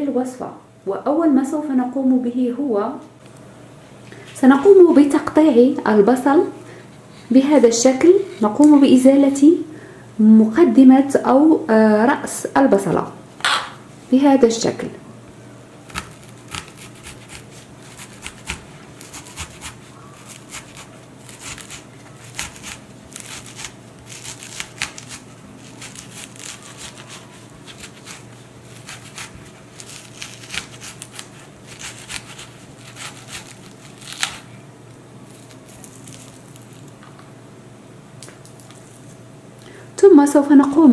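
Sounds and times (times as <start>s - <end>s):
faint steady hum: 0.0s - 40.9s
knife cutting onion: 15.8s - 34.5s.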